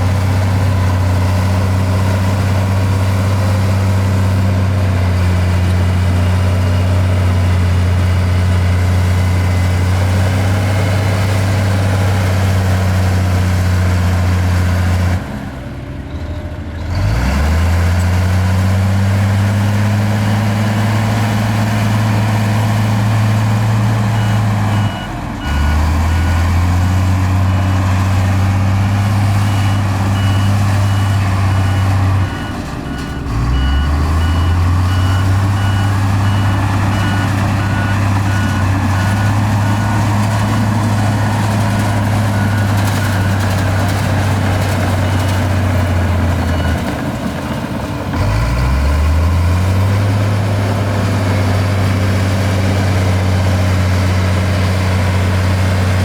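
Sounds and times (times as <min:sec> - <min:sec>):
heavy diesel engine running: 0:00.0 - 0:56.0
reversing alarm beeping: 0:23.2 - 0:47.0.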